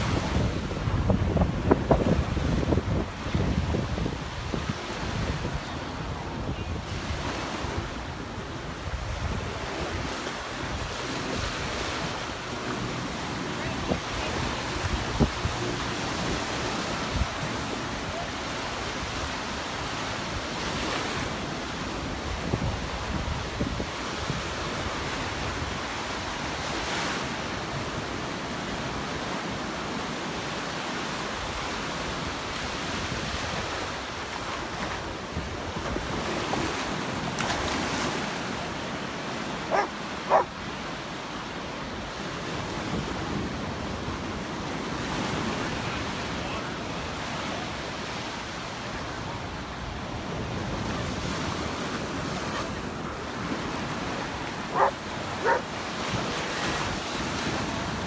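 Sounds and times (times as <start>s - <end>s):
wind buffeting microphone: 0.0s - 20.6s
surf washing onto beach: 0.0s - 58.0s.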